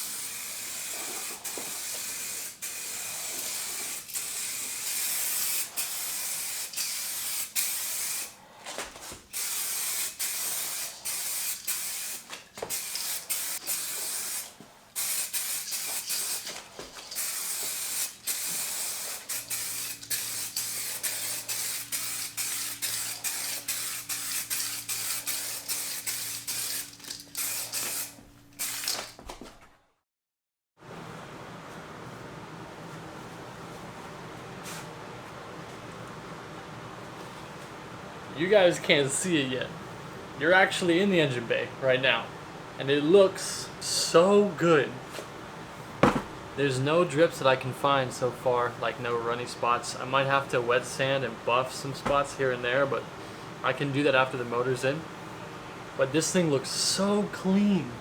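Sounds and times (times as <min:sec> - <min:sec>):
paint spray gun hissing: 0:00.0 - 0:08.4, 0:09.3 - 0:29.1.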